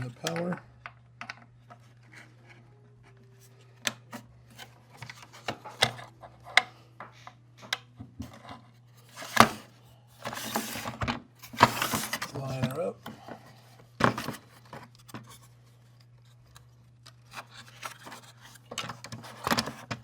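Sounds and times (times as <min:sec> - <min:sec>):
faint steady hum: 0:00.0 - 0:20.0
rustling scrape: 0:08.4 - 0:12.6.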